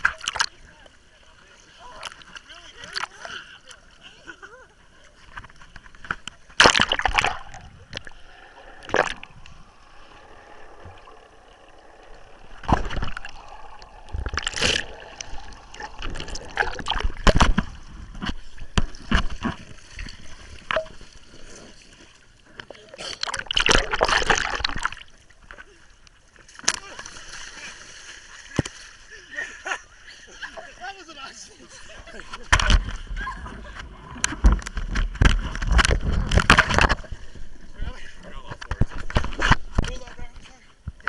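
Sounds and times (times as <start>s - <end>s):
seawater splashing: 0.0s - 25.4s
water gurgling: 0.0s - 25.8s.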